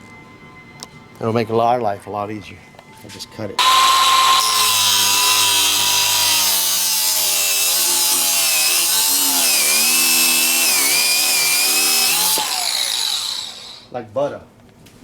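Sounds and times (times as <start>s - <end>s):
power cutting tool whining: 3.6s - 13.9s.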